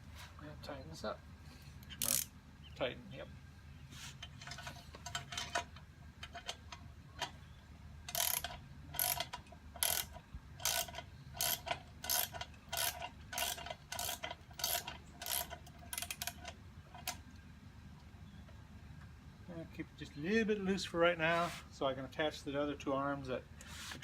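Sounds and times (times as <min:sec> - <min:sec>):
ratchet wrench clicking: 0:01.9 - 0:02.3, 0:08.1 - 0:17.2.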